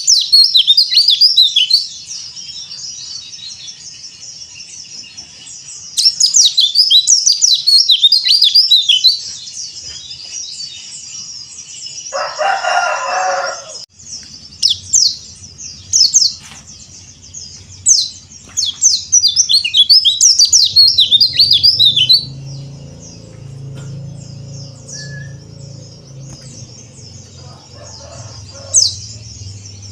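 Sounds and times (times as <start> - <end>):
songbirds twittering: 0.0 - 29.9
harsh lower bird call: 14.5 - 23.4.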